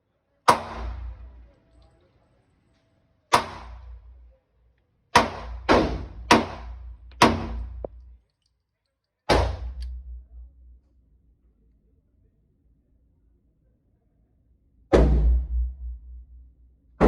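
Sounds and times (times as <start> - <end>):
gunshots with echoing tail: 0.5 - 1.4.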